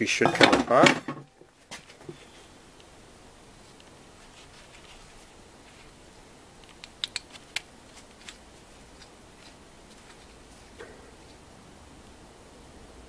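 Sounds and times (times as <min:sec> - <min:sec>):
sharp clicks and taps: 0:06.6 - 0:08.4.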